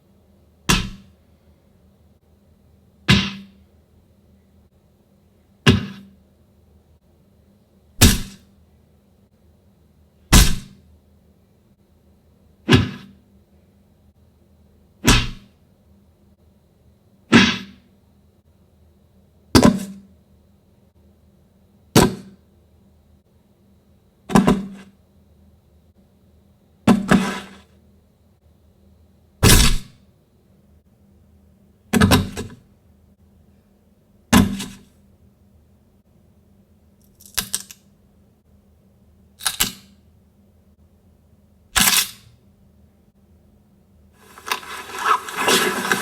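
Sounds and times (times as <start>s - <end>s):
sharp thwacks: 0.7s - 1.0s, 3.1s - 3.5s, 8.0s - 8.4s, 10.3s - 10.7s, 15.0s - 15.4s.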